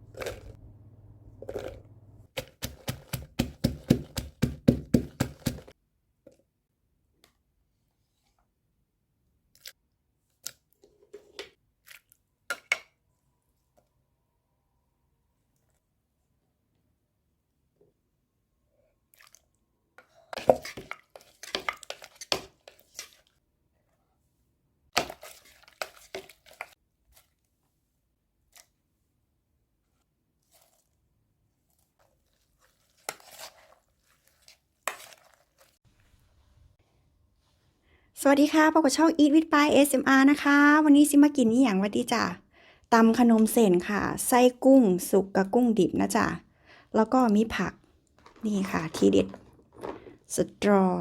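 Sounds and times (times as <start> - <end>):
crunching crisp food: 0.0 - 0.6.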